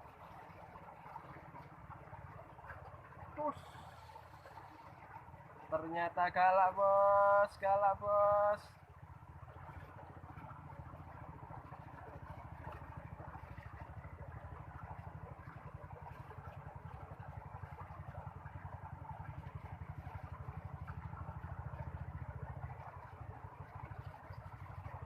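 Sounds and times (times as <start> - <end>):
small engine running: 3.1 - 5.8, 8.1 - 25.0.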